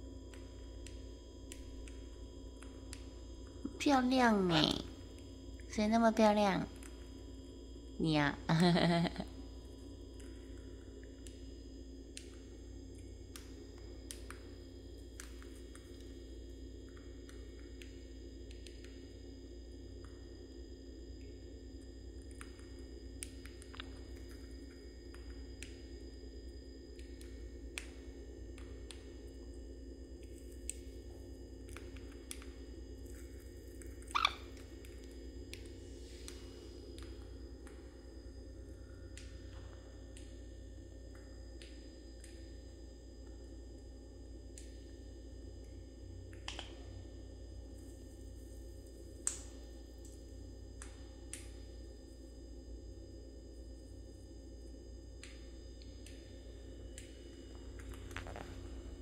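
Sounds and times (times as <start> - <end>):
low room hum: 0.0 - 59.0
faint clicks and taps: 0.3 - 2.0, 30.2 - 37.9
parrot call: 34.1 - 34.5.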